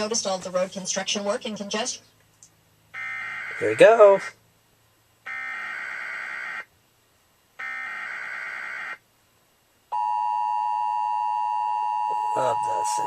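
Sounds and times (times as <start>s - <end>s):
two-tone attention signal: 10.0s - 13.0s.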